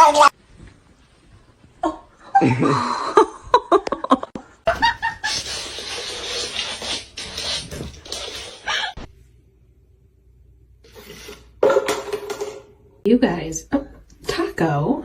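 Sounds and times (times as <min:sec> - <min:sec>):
person laughing: 0:02.3 - 0:05.6.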